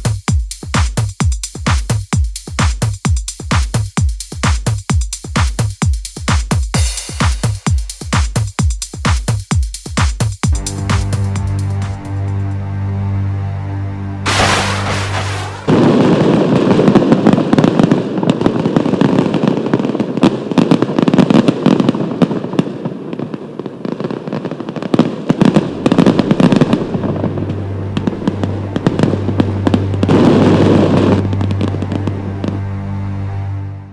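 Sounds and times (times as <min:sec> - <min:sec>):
fireworks bursting and crackling: 0:14.3 - 0:31.6.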